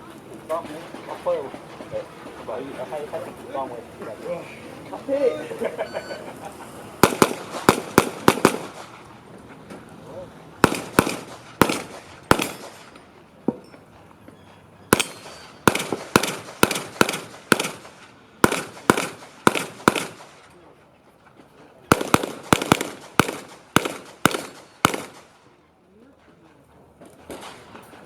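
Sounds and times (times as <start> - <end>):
handgun shots with echo: 7.0 - 9.0, 10.6 - 13.1, 14.9 - 20.3, 21.9 - 25.3.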